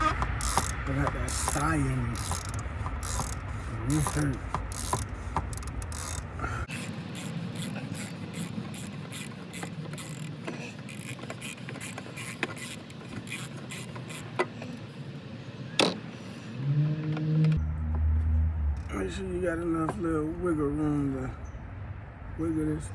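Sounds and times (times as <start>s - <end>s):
ratchet wrench clicking: 0.0s - 14.7s.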